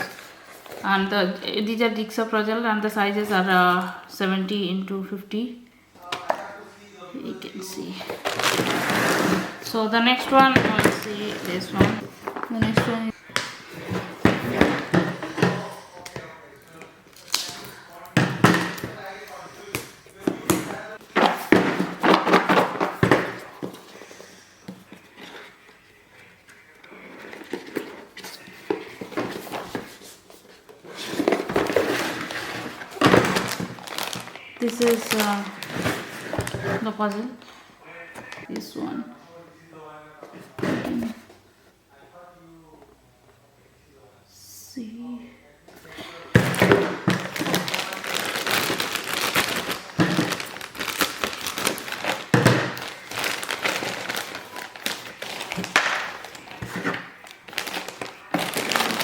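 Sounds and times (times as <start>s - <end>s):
cardboard rustling: 7.2s - 37.5s, 40.2s - 41.6s, 45.8s - 59.0s.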